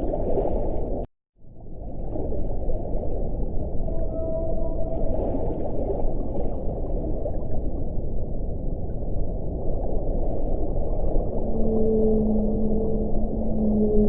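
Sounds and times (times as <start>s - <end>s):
deep water rumbling wash: 0.0s - 14.0s
faint whale call: 3.8s - 6.2s, 11.2s - 14.0s.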